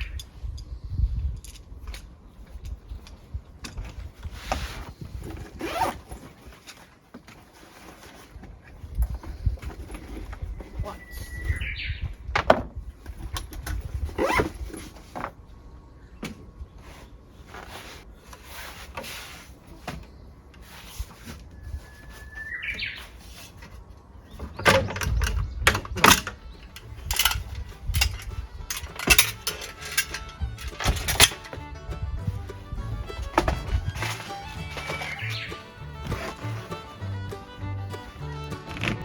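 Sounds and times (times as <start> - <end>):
bird chirping: 10.5 - 12.2, 21.6 - 23.2, 34.8 - 35.8
knocks and clatter: 24.4 - 31.7, 32.4 - 35.2.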